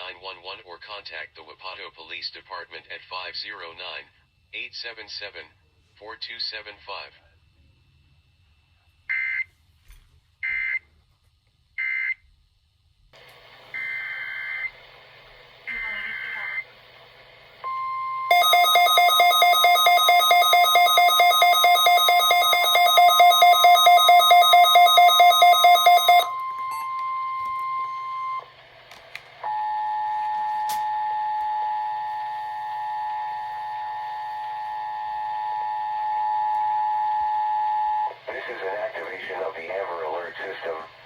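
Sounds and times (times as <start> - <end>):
two-tone attention signal: 17.7 - 28.4
rapid electronic alarm beeping: 17.8 - 28.4
steady alert tone: 18.3 - 26.3.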